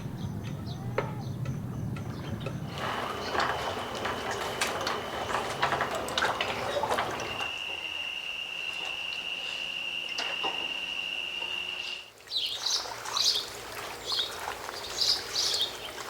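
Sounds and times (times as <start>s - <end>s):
water splashing and dripping: 2.4s - 7.8s, 10.1s - 16.0s.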